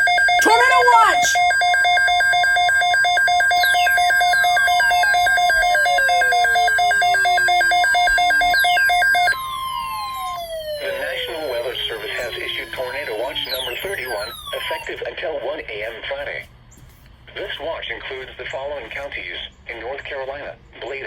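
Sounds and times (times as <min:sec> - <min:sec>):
rapid pulsing two-pitch beep: 0:00.0 - 0:14.8
steady alarm tone: 0:00.0 - 0:15.0.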